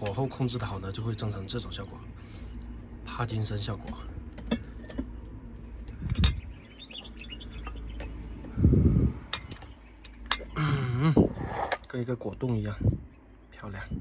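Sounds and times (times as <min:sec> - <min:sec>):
low steady hum: 0:00.0 - 0:14.0
bird-like chirping: 0:06.2 - 0:08.2.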